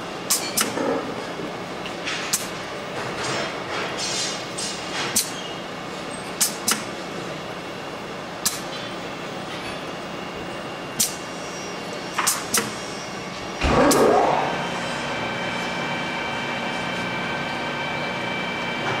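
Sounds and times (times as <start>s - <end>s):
motor whine and hum: 9.0s - 19.0s.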